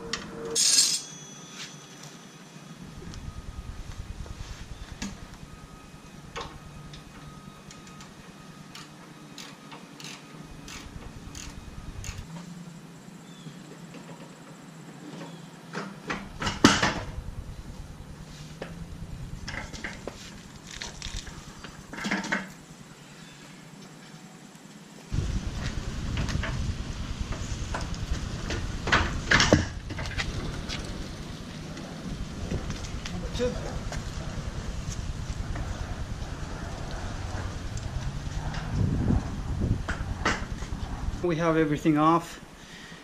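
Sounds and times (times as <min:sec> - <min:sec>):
metal tools clinking and knocking: 0:00.6 - 0:02.2.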